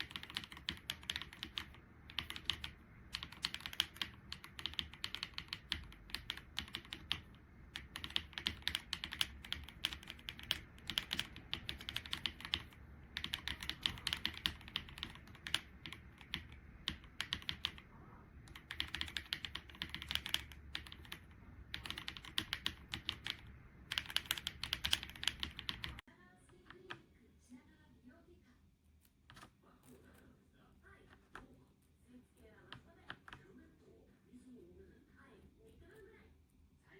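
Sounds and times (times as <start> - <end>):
mechanical keyboard typing: 0.0 - 27.0.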